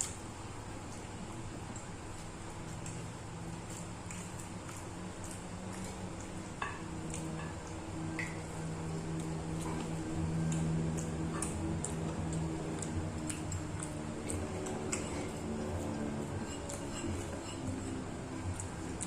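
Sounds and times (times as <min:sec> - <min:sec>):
steady low hum: 0:00.0 - 0:19.0
wet chewing: 0:00.9 - 0:19.0
mouth and lip clicks: 0:02.7 - 0:06.4, 0:09.1 - 0:19.0.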